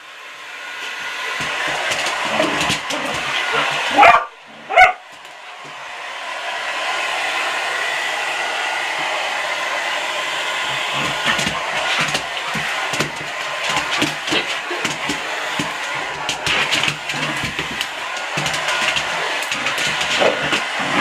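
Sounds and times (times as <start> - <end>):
hair dryer blowing: 0.0 - 21.0
dog barking: 3.5 - 5.1.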